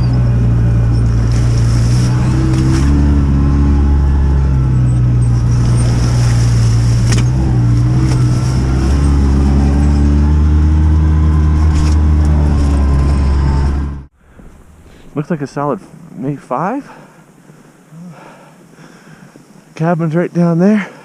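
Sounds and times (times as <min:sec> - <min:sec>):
vehicle engine running: 0:00.0 - 0:14.1.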